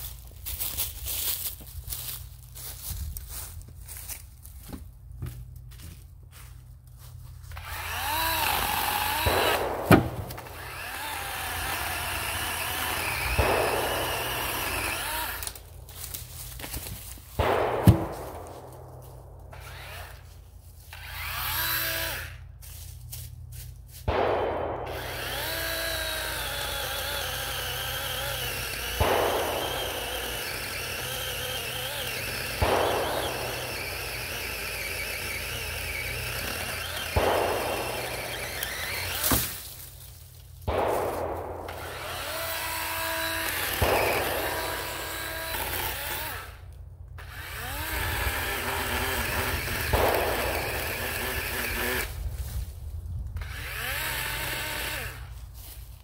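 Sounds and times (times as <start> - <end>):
electric chainsaw cutting: 7.4 - 18.5, 19.5 - 22.6, 24.7 - 40.0, 40.8 - 52.6, 53.4 - 55.8.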